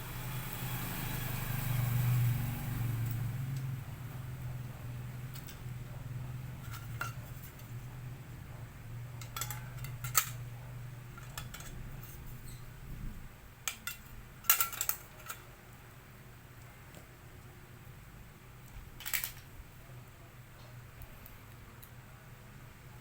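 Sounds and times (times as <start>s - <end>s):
low steady hum: 0.0s - 23.0s
metal parts clinking: 6.6s - 7.8s, 9.2s - 10.4s, 11.2s - 12.2s, 13.7s - 15.4s, 19.0s - 19.5s.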